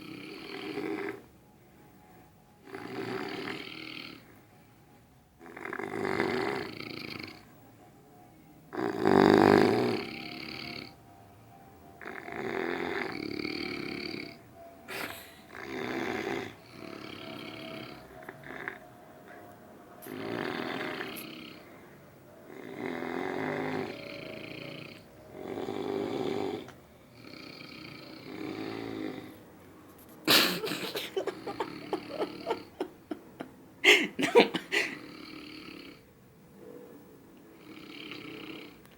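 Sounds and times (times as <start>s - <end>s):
rasping snores: 0.0s - 1.3s, 2.6s - 4.3s, 5.4s - 7.5s, 8.7s - 11.0s, 12.0s - 14.4s, 15.5s - 18.9s, 20.0s - 21.8s, 22.5s - 29.4s, 34.8s - 36.1s, 37.6s - 38.9s.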